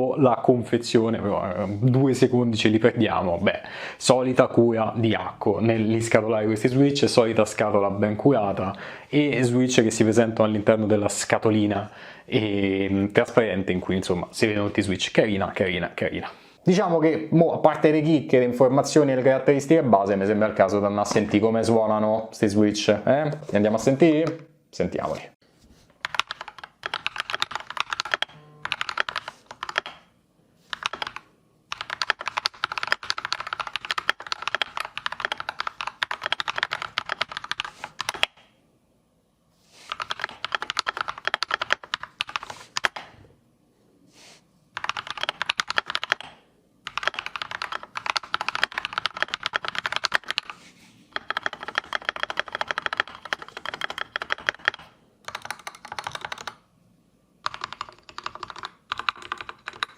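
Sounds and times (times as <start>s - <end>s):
typing on mechanical keyboard: 26.0s - 30.1s, 30.7s - 38.4s, 39.9s - 43.1s, 44.8s - 56.6s, 57.4s - 59.9s.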